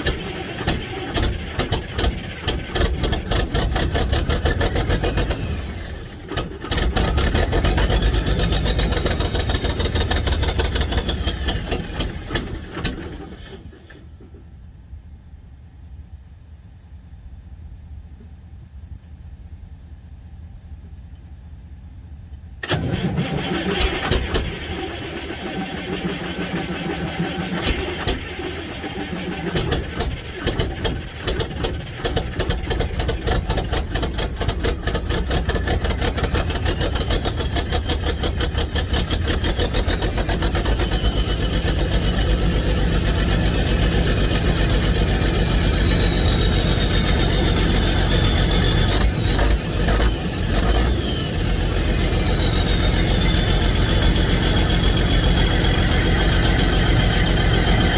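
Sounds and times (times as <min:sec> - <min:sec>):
diesel engine starter cranking: 0:00.0 - 0:14.4, 0:22.6 - 0:57.9
diesel engine running: 0:00.0 - 0:14.7, 0:22.3 - 0:57.9
high engine whine: 0:00.0 - 0:16.2, 0:17.0 - 0:57.9.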